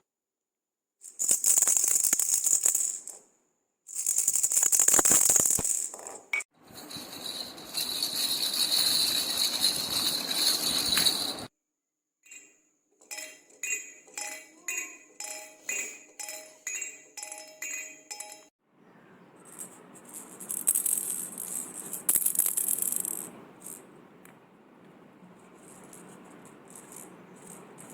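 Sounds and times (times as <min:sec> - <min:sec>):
toy rattles shaking: 0:01.0 - 0:03.2, 0:03.9 - 0:11.5, 0:12.3 - 0:18.5, 0:19.5 - 0:23.8, 0:25.6 - 0:27.9
chiming rattle strokes: 0:06.7 - 0:11.5, 0:12.3 - 0:18.5.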